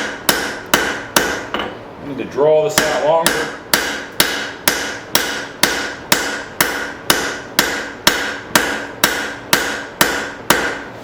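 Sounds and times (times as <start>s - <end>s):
hammer ringing on hot steel: 0.0s - 1.8s, 2.7s - 10.9s.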